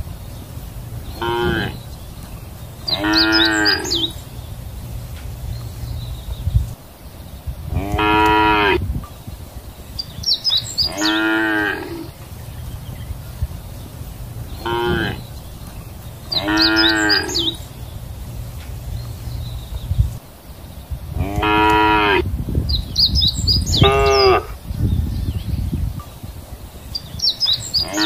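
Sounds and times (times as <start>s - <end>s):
cattle mooing: 1.2s - 1.8s, 7.8s - 8.8s, 10.9s - 12.1s, 14.6s - 15.2s, 16.4s - 17.6s, 21.2s - 22.3s.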